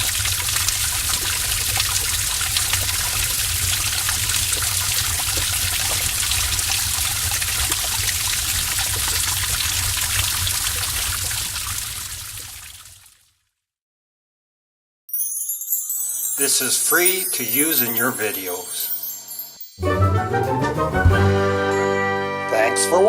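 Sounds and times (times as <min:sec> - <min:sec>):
water trickling: 0:00.0 - 0:13.2
water drips and splashes: 0:00.0 - 0:13.3.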